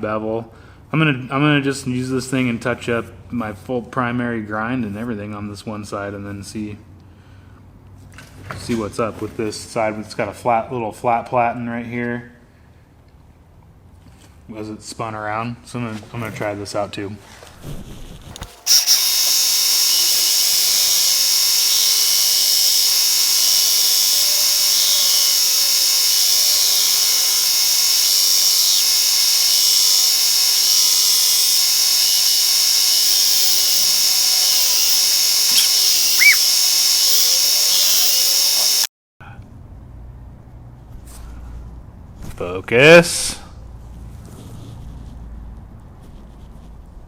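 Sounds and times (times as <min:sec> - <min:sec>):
belt sharpener grinding knife blade: 0:18.4 - 0:38.9.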